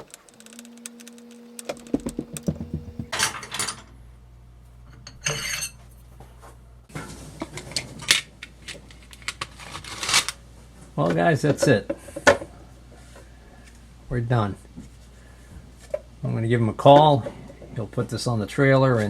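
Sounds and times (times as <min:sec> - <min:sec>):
metal tools clinking: 0:00.0 - 0:03.9, 0:04.9 - 0:05.8
low steady hum: 0:00.0 - 0:09.4.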